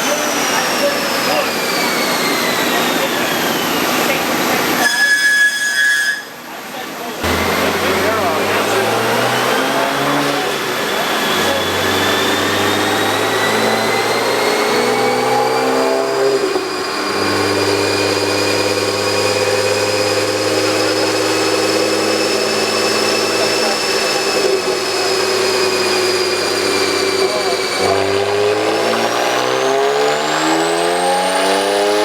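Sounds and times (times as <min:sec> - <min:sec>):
car engine revving: 0:07.2 - 0:32.0.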